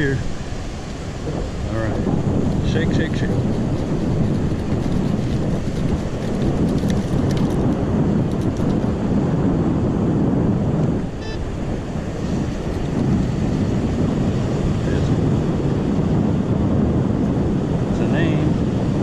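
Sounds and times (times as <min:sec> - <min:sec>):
wind buffeting microphone: 0:00.0 - 0:19.0
high electronic beep: 0:11.2 - 0:11.4.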